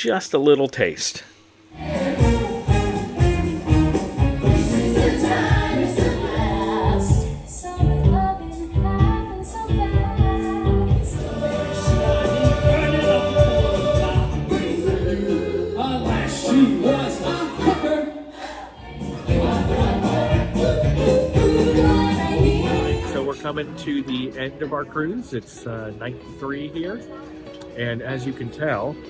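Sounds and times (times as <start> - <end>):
ensemble singing: 1.3 - 26.2
band with steady beat: 2.0 - 16.4.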